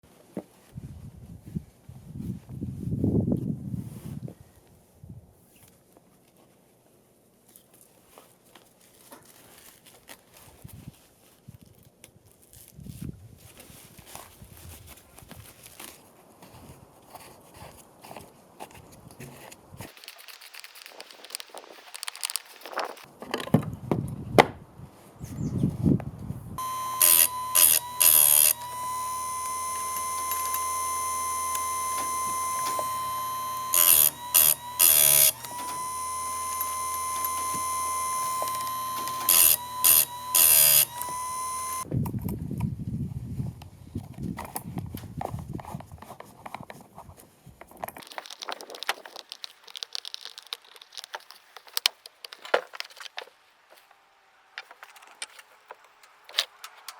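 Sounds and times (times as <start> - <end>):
electronic alarm beeping: 26.6 - 41.8.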